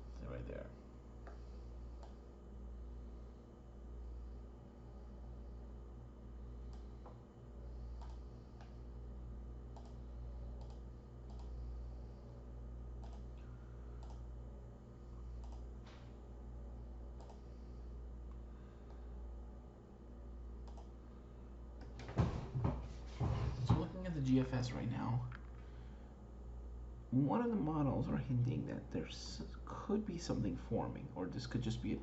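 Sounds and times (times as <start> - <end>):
low electrical hum: 0.0 - 32.0
computer mouse clicking: 2.0 - 2.2, 8.0 - 8.8, 9.7 - 11.6, 13.0 - 13.3, 14.0 - 14.3, 15.3 - 15.7, 17.1 - 17.4, 20.6 - 21.0.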